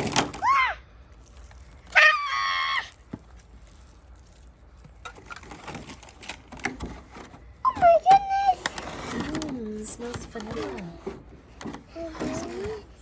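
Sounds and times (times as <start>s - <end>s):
child squealing: 0.4s - 0.8s, 2.0s - 3.0s.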